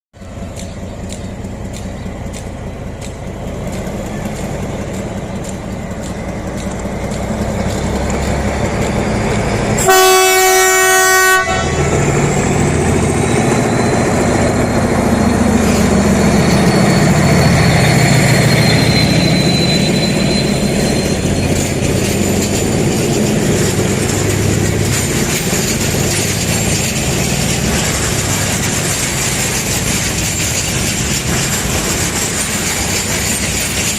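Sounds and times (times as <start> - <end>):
diesel locomotive engine roaring: 0.2 - 33.9
train horn blast: 9.8 - 12.2
faint high squeal: 13.0 - 22.0.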